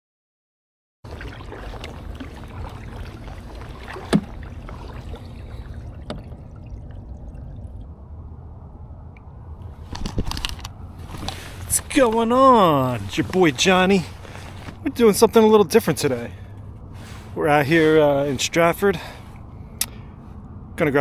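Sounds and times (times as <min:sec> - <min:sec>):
water sloshing around a hull: 0:01.0 - 0:20.4
wind rumble on microphone: 0:01.3 - 0:14.8.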